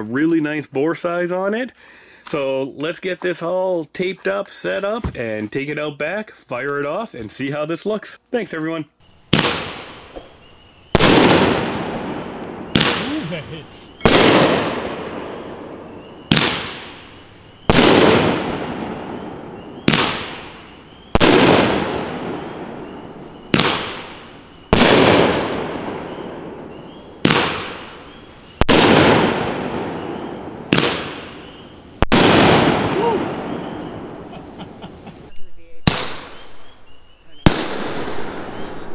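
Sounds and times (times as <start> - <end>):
firework bangs with echo: 9.3 - 34.3, 35.9 - 36.5, 37.4 - 38.8.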